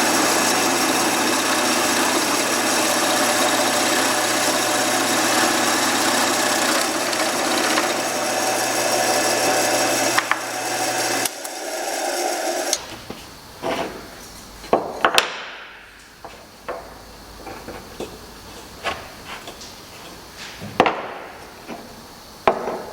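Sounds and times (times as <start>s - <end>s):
power tool cutting wood: 0.0s - 12.8s.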